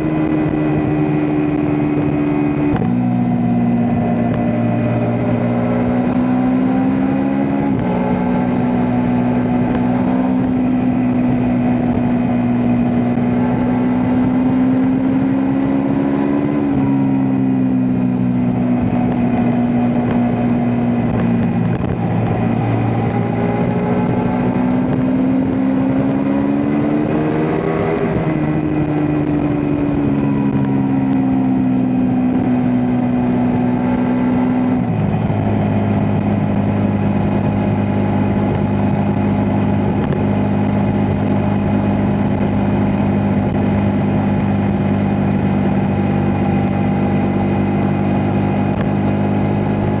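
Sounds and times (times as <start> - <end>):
motorcycle engine accelerating: 0.0 - 50.0.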